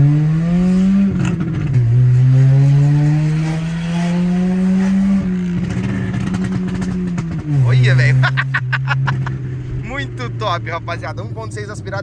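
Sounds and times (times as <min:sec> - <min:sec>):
car engine revving: 0:00.0 - 0:11.1
exhaust crackle: 0:05.3 - 0:10.2.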